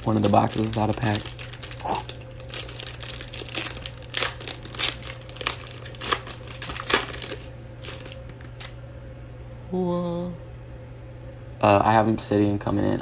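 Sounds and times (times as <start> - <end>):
plastic wrapping crinkling and tearing: 0.0 - 8.8.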